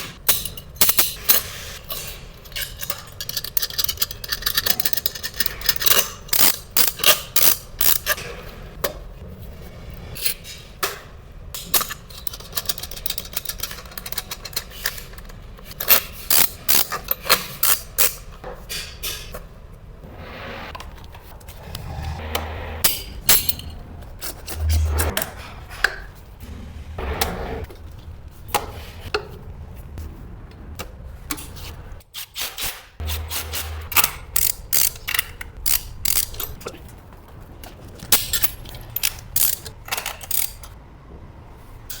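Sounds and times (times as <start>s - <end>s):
clicks and knocks of pipes and tools: 0.2s - 9.1s, 10.2s - 19.5s, 32.2s - 40.8s
low hum: 19.8s - 25.6s, 26.2s - 28.6s.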